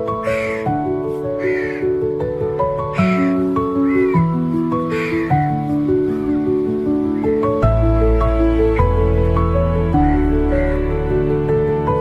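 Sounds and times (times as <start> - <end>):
gentle melodic notes: 0.0 - 12.0.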